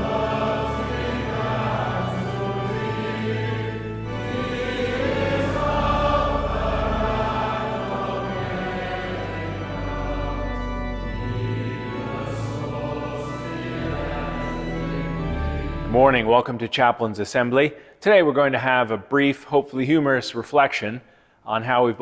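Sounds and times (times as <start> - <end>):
choir singing slow chords: 0.0 - 16.1.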